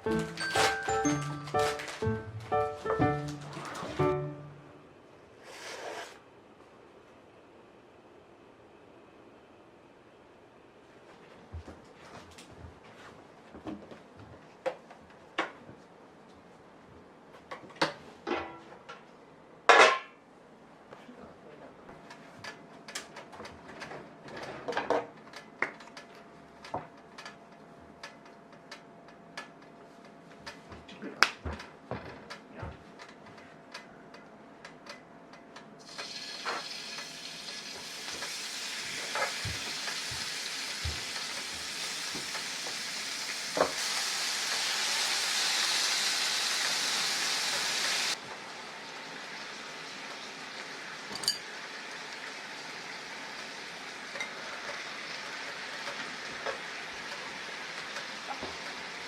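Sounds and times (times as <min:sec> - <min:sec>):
kitchen utensils clinking: 0:00.0 - 0:04.0, 0:51.1 - 0:51.6
food sizzling in frying pan: 0:35.8 - 0:59.0.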